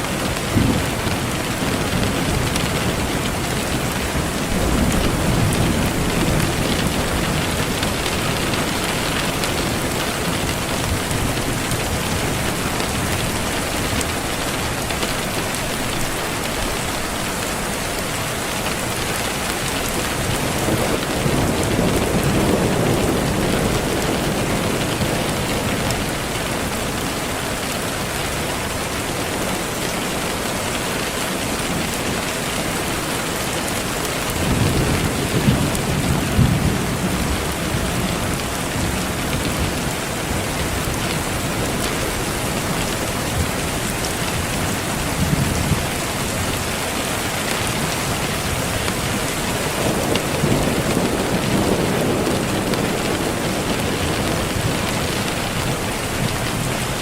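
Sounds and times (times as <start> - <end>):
steady rain falling: 0.0 - 57.0
low rolls of thunder: 0.1 - 14.0, 19.8 - 26.8, 34.3 - 42.7, 48.2 - 56.8.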